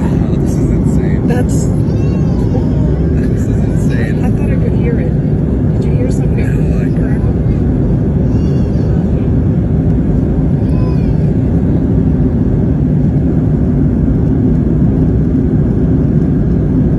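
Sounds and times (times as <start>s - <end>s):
airliner cabin rumble: 0.0s - 16.9s.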